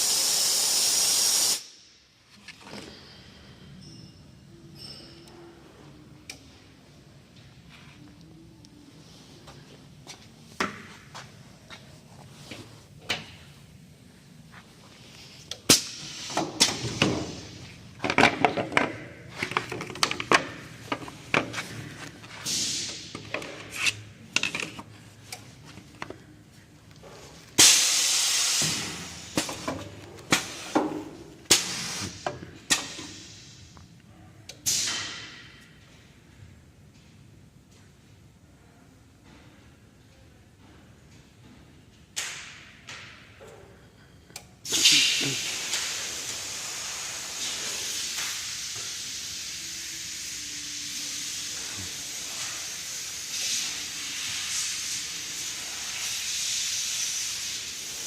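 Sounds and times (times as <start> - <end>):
welding machine hiss: 0.0 - 1.8, 15.4 - 17.8, 22.4 - 23.1, 27.6 - 29.7, 31.5 - 33.7, 34.6 - 35.4, 44.6 - 58.0.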